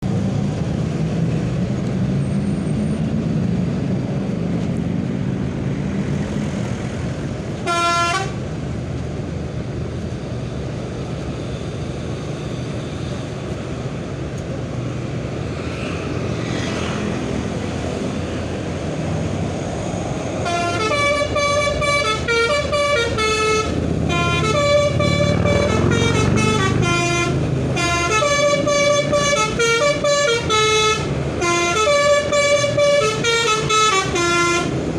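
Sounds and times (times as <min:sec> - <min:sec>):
engine rumble: 0:00.0 - 0:34.9
multi-tone musical horn: 0:07.6 - 0:08.4, 0:20.4 - 0:34.8.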